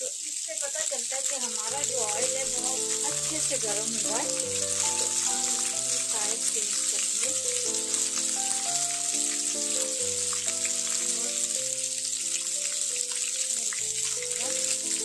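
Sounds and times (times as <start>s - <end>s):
chicken sizzling in hot oil: 0.0s - 15.0s
background music held notes: 1.7s - 15.0s.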